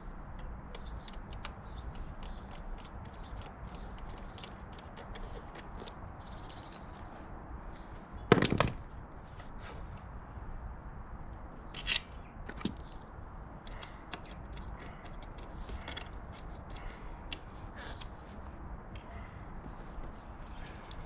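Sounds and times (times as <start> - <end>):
metal parts clicking and scraping: 11.7 - 12.2.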